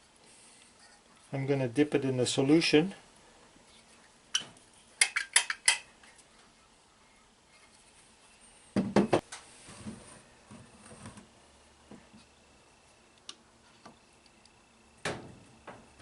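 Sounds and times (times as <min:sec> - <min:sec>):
metal parts clacking together: 0:05.0 - 0:05.9.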